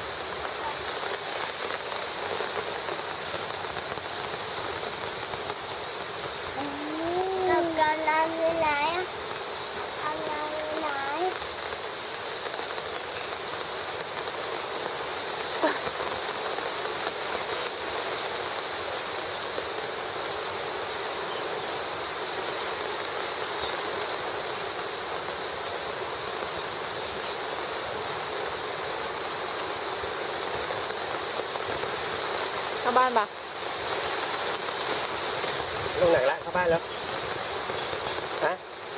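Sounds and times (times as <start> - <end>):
heavy rain: 0.0 - 38.9.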